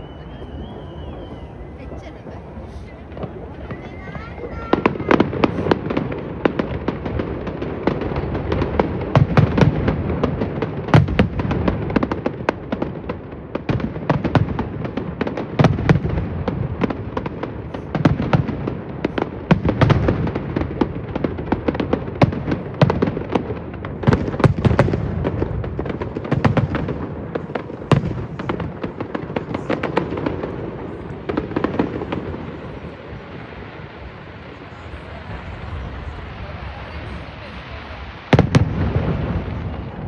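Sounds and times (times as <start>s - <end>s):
deep firework booms: 0.0s - 40.0s
firework shell bursts and crackles: 0.0s - 40.0s.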